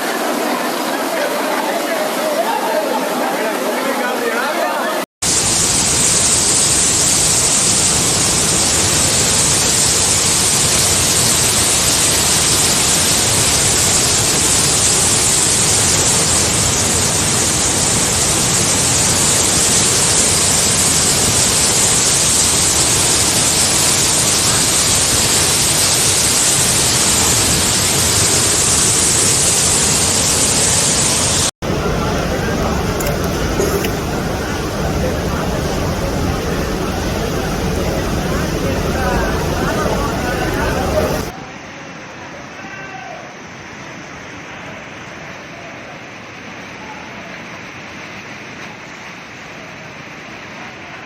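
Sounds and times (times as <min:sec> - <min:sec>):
heavy rain and rushing water: 0:00.0 - 0:41.4.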